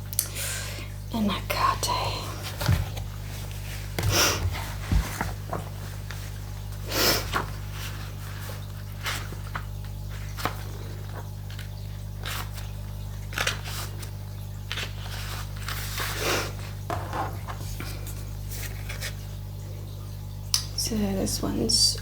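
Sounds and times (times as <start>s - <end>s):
steady low hum: 0.0s - 22.0s
cards tapping and rustling: 2.4s - 6.2s, 9.0s - 19.2s.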